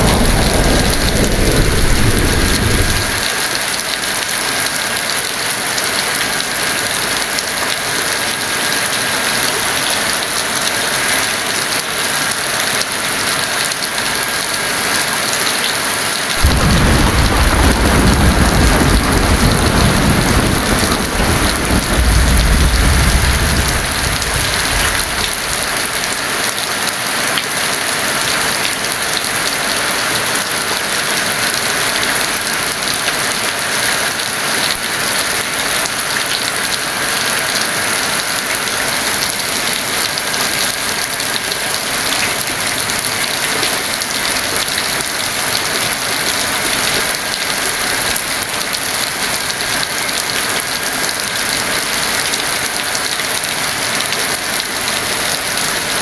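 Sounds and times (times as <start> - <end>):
thunder rumbling: 0.0 - 3.5, 16.4 - 26.1
heavy rain hissing: 0.0 - 7.2, 13.0 - 36.1.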